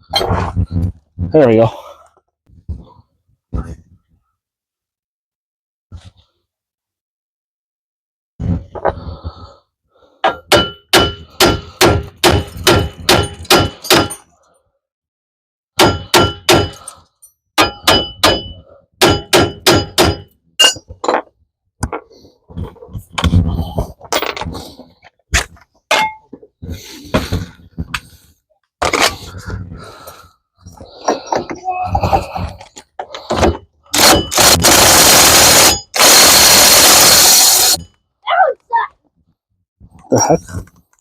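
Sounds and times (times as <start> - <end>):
hammer striking steel: 10.3 - 14.2, 15.8 - 16.8, 17.6 - 20.9.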